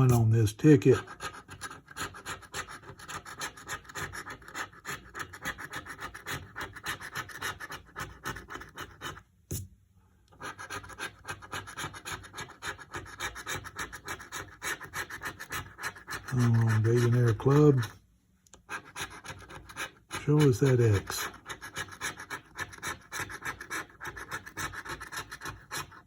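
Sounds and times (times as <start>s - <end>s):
lottery ticket being scratched: 0.0s - 9.6s, 10.4s - 18.0s, 18.6s - 26.0s.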